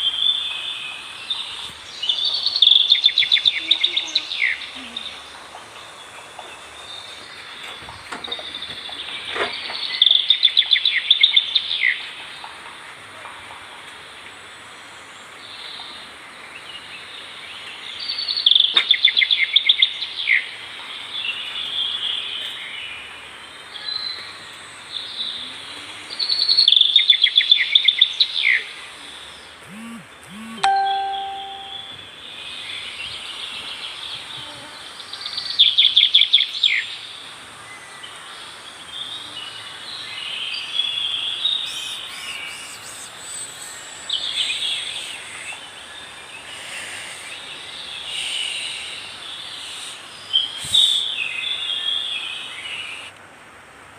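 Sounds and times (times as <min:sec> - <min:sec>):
steady high hiss: 0:27.3 - 0:34.1, 0:34.8 - 0:53.9
bird singing rapid trill: 0:29.7 - 0:32.0, 0:40.3 - 0:46.6.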